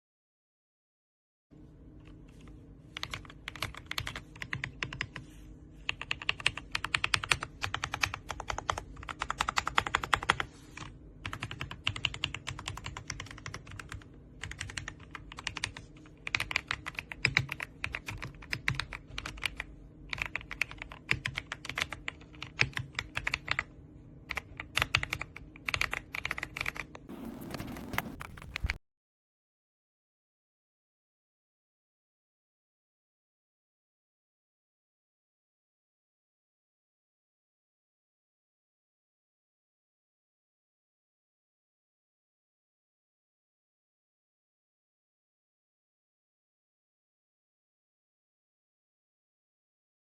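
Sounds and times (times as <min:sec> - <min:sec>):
mechanical keyboard typing: 0:03.0 - 0:05.2, 0:05.9 - 0:23.7, 0:24.3 - 0:28.8.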